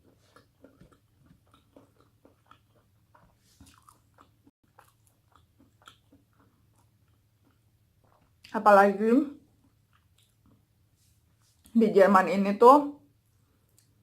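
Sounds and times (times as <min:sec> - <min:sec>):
person chewing: 0:00.0 - 0:08.5, 0:09.4 - 0:11.7.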